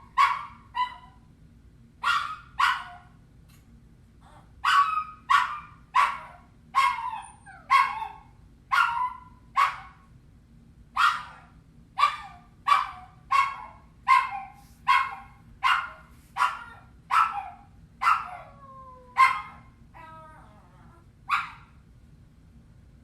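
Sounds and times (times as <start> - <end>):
puppy yelping: 4.6 - 9.9
puppy whining and whimpering: 7.0 - 7.7, 20.0 - 21.1.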